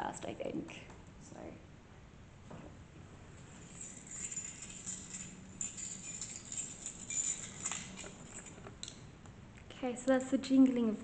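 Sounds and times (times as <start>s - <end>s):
keys jangling: 3.6s - 9.0s.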